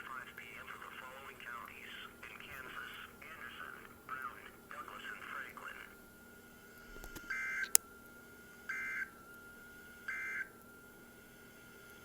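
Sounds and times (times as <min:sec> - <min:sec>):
sharp click: 0:07.0 - 0:07.8
digital data tone bursts: 0:07.2 - 0:07.8.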